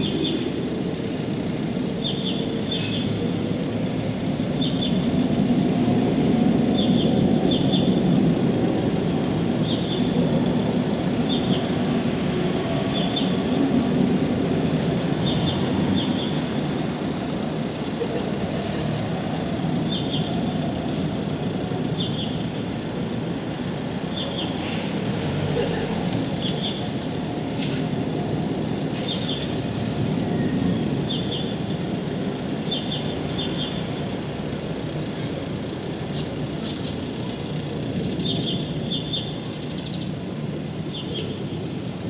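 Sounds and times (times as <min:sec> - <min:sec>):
bird chirping: 0:00.0 - 0:03.1, 0:04.3 - 0:05.0, 0:06.5 - 0:08.0, 0:09.4 - 0:10.2, 0:11.0 - 0:11.7, 0:19.6 - 0:20.4, 0:21.7 - 0:22.4, 0:23.9 - 0:24.6, 0:26.2 - 0:27.1, 0:28.8 - 0:29.6, 0:30.7 - 0:31.7, 0:32.4 - 0:33.9, 0:36.1 - 0:41.4.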